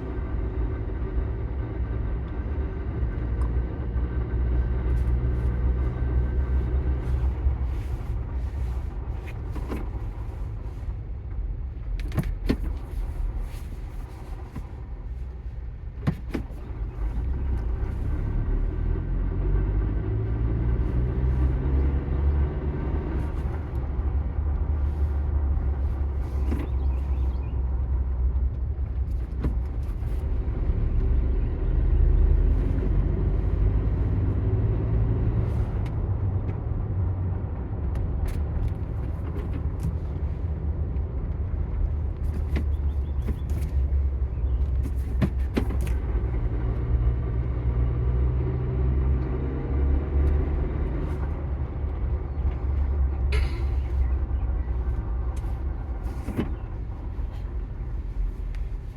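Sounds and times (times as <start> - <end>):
engine idling: 50.4 - 58.9.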